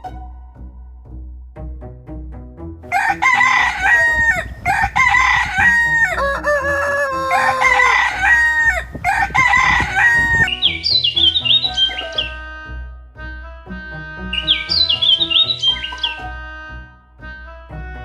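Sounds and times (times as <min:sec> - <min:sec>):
background music: 0:00.0 - 0:18.0
rooster crowing: 0:02.9 - 0:10.5.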